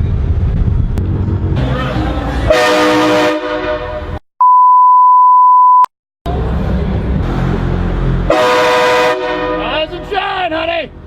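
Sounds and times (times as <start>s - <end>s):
traffic rumble: 0.0s - 2.6s, 6.3s - 11.0s
horn chord: 2.5s - 4.2s, 8.3s - 9.9s
high-pitched censor bleep: 4.4s - 5.9s.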